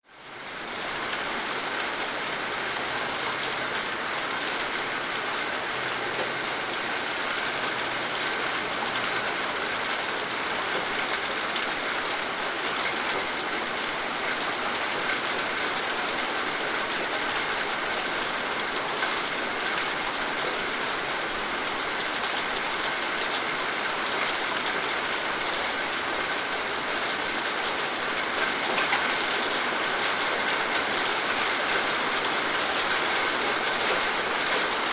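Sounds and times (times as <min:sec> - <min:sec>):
rain pattering: 0:00.2 - 0:34.9.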